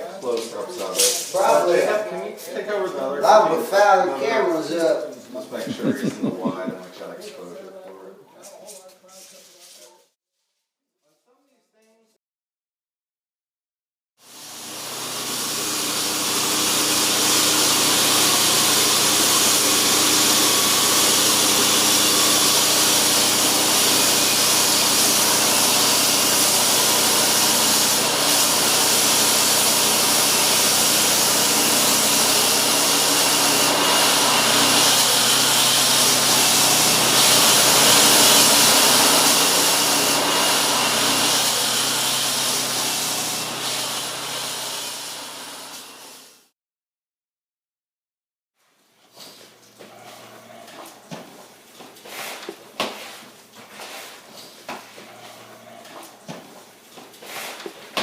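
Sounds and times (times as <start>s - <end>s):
hissing machine noise: 14.2s - 46.4s.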